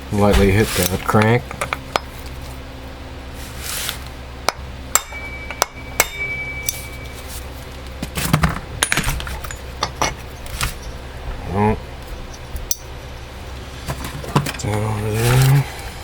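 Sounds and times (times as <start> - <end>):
hammer tapping metal punch: 4.5 - 7.2.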